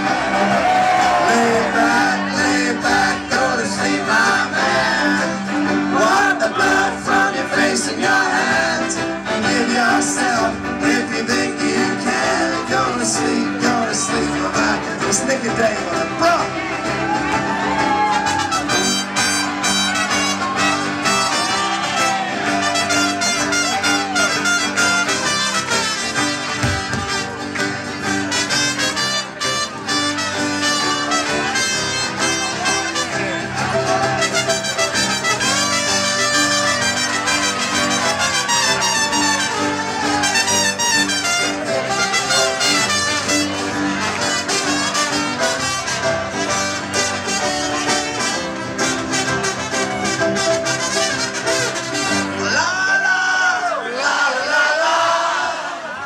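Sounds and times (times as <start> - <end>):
live folk band playing: 0.0 - 53.0
horns playing bending notes: 18.2 - 52.5.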